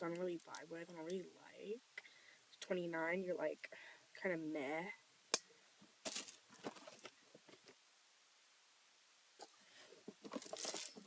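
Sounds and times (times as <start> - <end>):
packaging rustling: 6.0 - 7.6, 10.2 - 11.0.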